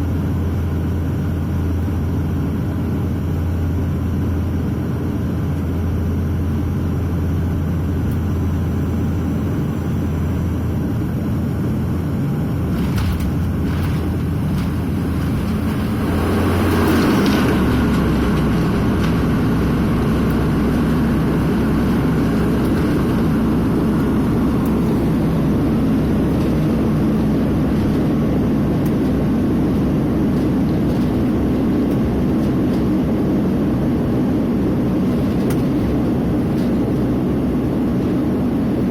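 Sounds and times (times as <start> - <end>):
propeller drone: 0.0 - 38.9
rushing of reverse thrust: 14.6 - 18.6.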